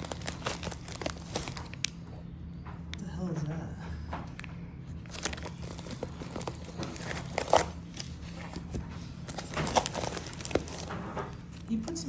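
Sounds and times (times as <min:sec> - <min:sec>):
packaging crinkling: 0:00.0 - 0:02.0, 0:05.0 - 0:11.8.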